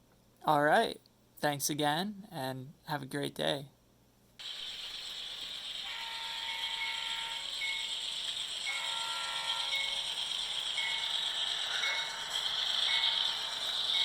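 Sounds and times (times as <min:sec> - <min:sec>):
model train rattling on track: 0:04.4 - 0:14.0
train horn blasts: 0:05.9 - 0:07.4.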